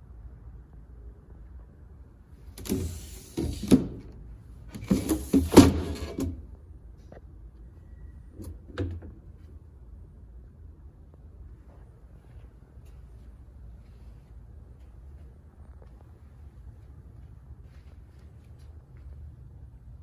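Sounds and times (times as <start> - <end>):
glass freezer lid sliding: 4.8 - 6.4.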